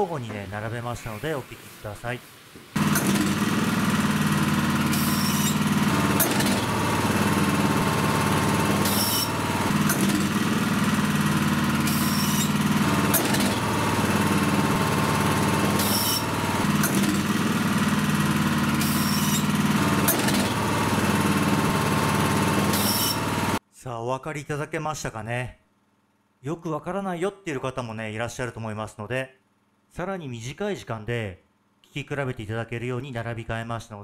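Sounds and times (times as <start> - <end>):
high clutch squeal: 2.8 - 10.4, 11.7 - 13.6, 15.6 - 17.1, 18.7 - 20.2, 22.7 - 23.4
snowblower engine running: 2.8 - 23.6
clutch click: 9.8 - 10.3, 15.7 - 17.2.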